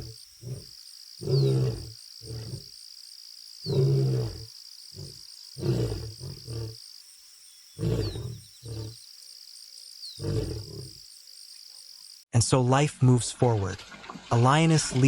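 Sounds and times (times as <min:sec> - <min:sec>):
lion roaring: 0:00.0 - 0:02.8, 0:03.6 - 0:06.8, 0:07.8 - 0:09.0, 0:10.2 - 0:11.0.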